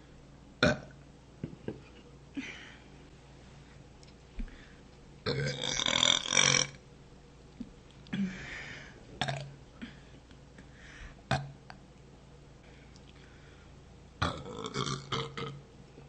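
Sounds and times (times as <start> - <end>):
soft breathy sound: 8.1 - 9.1
woman burping: 9.2 - 10.0.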